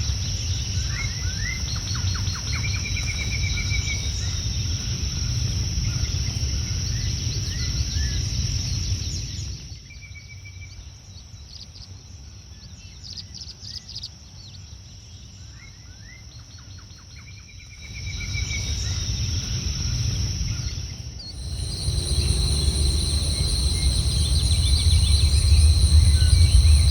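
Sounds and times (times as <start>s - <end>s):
high insect drone: 17.8s - 26.9s
small birds chirping and trilling: 21.2s - 26.9s
low rumble: 21.3s - 26.9s.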